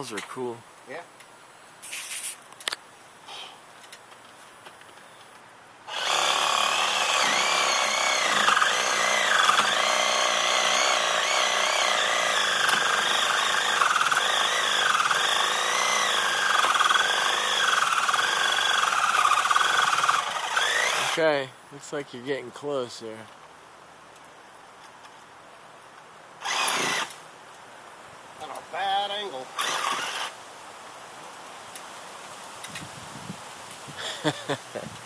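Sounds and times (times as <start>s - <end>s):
reciprocating saw cutting wood: 5.9s - 21.2s, 26.4s - 27.2s, 29.5s - 30.4s.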